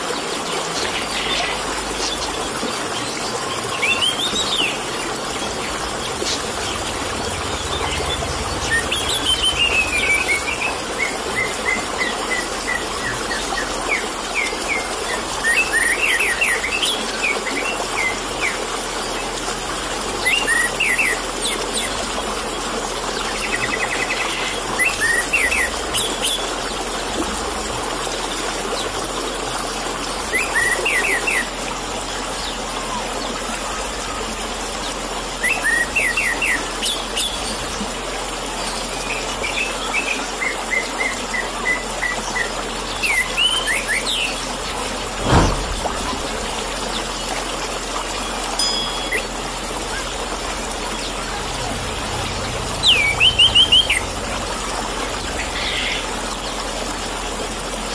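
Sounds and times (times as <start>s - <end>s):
trickle of running water: 0.0s - 57.9s
bird singing chirps and whistles: 48.6s - 49.4s.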